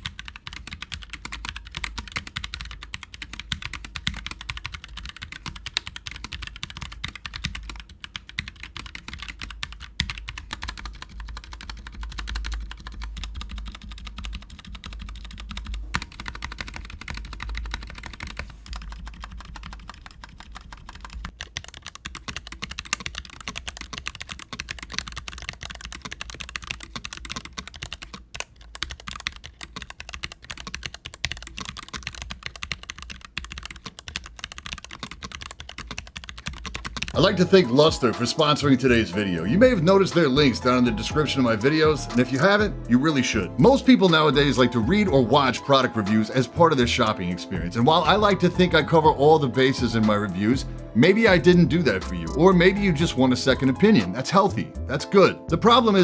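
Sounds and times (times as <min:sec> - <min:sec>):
fast typing on mechanical keyboard: 0:00.0 - 0:37.2.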